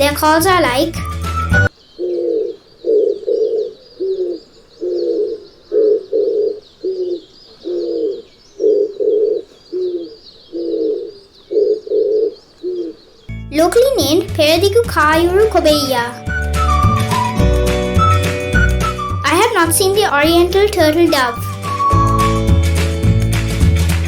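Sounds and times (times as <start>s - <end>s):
high chirping: 0.5s - 22.8s
dove cooing: 1.9s - 13.3s.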